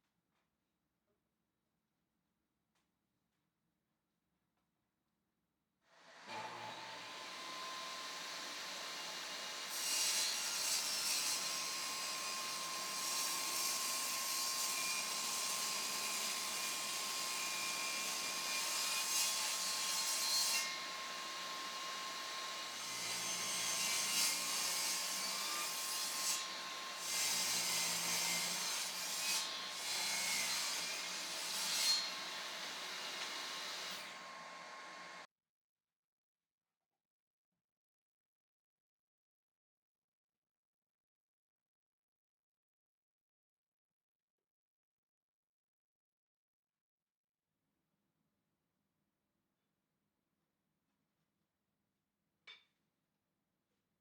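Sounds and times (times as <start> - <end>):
power tool cutting wood: 6.1 - 35.3.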